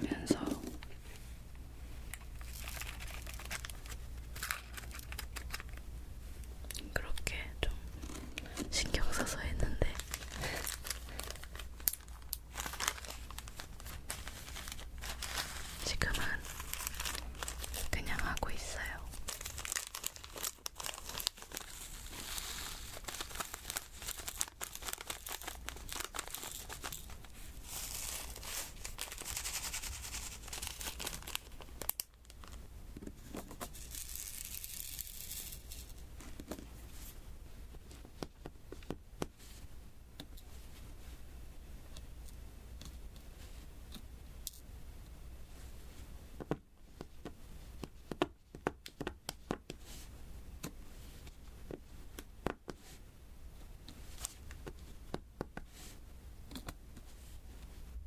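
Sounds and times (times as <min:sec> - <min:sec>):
crinkly adhesive film noise: 0:02.0 - 0:32.6, 0:33.2 - 0:37.2.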